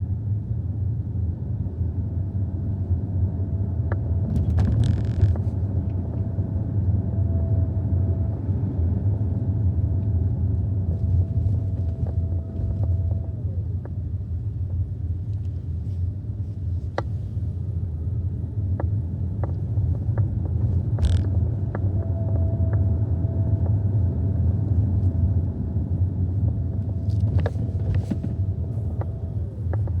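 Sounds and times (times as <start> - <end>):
road rumble inside car: 0.0 - 30.0
light ticks in cabin: 10.0 - 17.6, 18.3 - 30.0.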